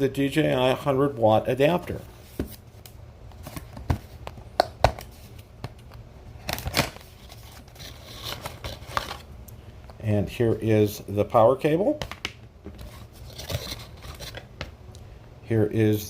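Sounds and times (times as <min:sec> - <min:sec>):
packaging rustling: 0:06.4 - 0:09.3, 0:12.7 - 0:14.6.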